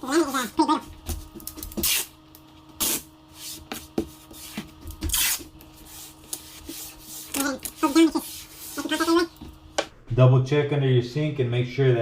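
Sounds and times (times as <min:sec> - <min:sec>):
tape tearing off roll: 0:01.7 - 0:02.2, 0:02.8 - 0:03.1, 0:05.0 - 0:05.5.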